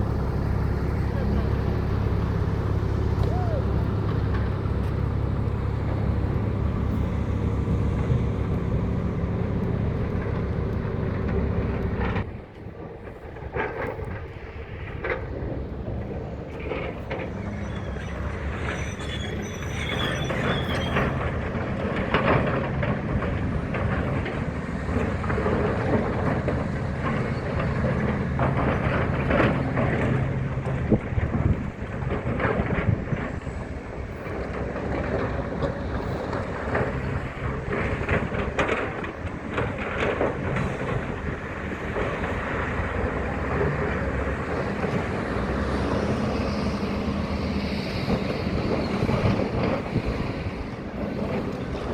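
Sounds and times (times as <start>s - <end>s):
excavator diesel engine running: 0.0s - 51.9s
high squeal: 17.1s - 21.7s.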